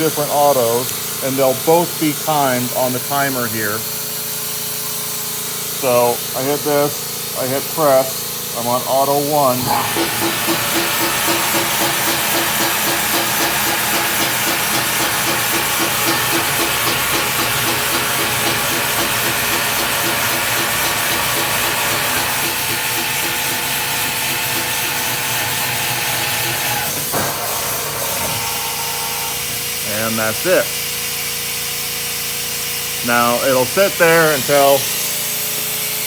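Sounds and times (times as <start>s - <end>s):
compressed air hissing: 0.0s - 36.0s
motors pulsing drone: 9.2s - 32.0s.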